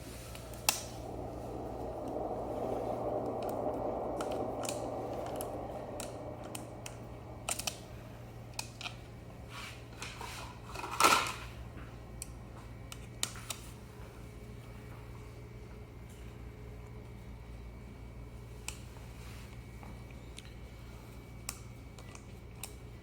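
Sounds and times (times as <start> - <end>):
brief rush of noise: 0.0 - 8.6.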